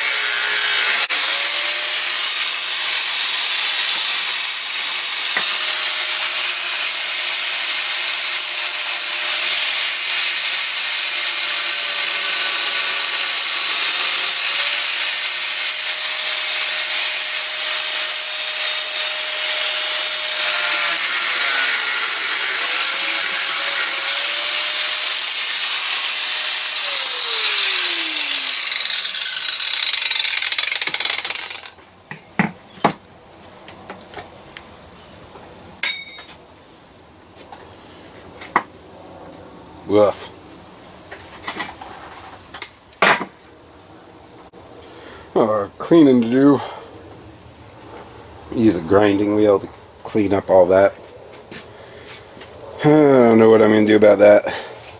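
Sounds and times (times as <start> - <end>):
power tool cutting steel: 0.0 - 31.8
metal clinks: 35.8 - 36.4.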